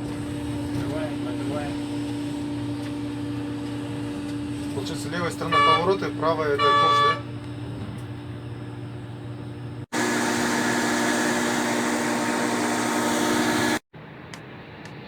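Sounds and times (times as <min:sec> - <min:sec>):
mechanical drone with whine: 0:00.0 - 0:09.8
mining machinery hum: 0:00.0 - 0:13.8.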